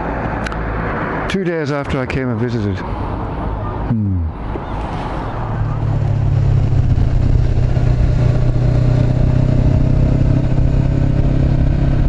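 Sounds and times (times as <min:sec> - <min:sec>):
motorcycle engine running steadily: 0:05.6 - 0:12.0.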